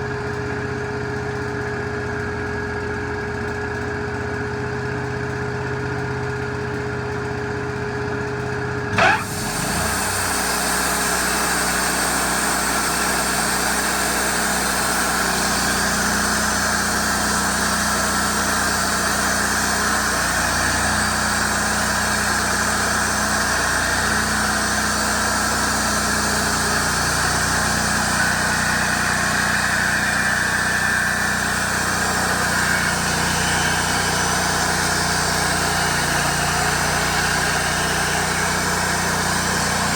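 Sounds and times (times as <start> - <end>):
sawmill engine running: 0.0 - 39.9
steady rushing of saw: 8.9 - 39.9.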